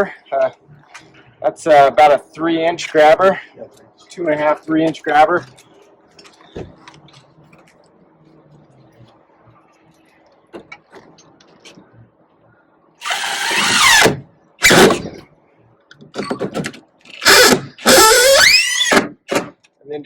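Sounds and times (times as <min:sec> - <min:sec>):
power drill driving screws: 0:13.0 - 0:15.0, 0:17.1 - 0:19.4.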